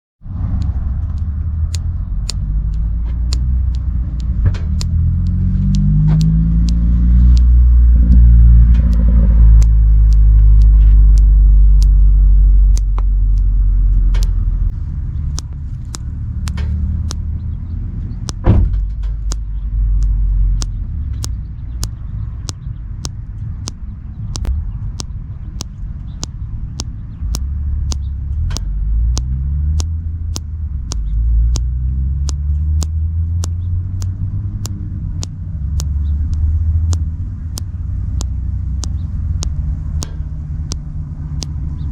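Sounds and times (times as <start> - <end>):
thumb joint popping: 0.6 - 8.2, 19.2 - 40.8.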